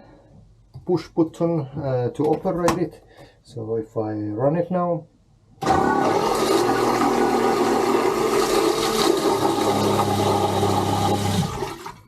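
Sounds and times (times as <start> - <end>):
toilet pump motor whirring: 5.6 - 12.0.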